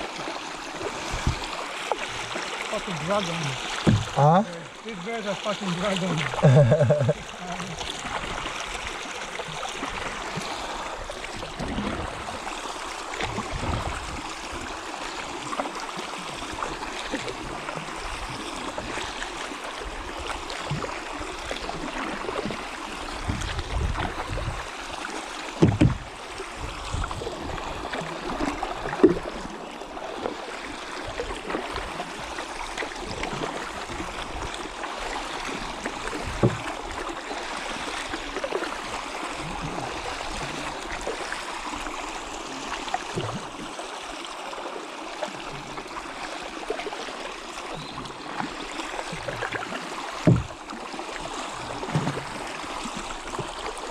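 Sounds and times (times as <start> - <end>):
water sloshing around kayak: 0.0 - 53.9
sharp knocks: 3.8 - 4.2.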